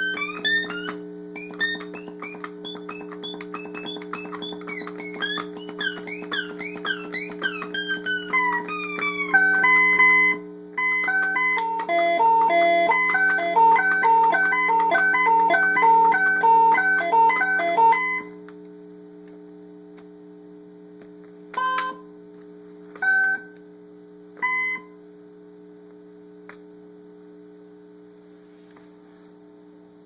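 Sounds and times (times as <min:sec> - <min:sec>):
rapid electronic beeping notes: 0:00.0 - 0:18.0
low electronic hum: 0:00.0 - 0:30.0.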